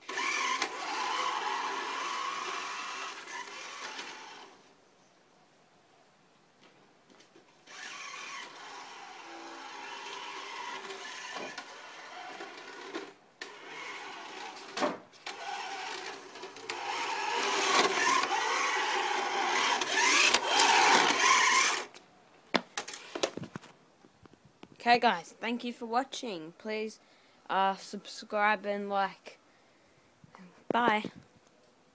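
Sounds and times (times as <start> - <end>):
radio-controlled car motor whining: 0.0 - 4.6, 7.6 - 22.0.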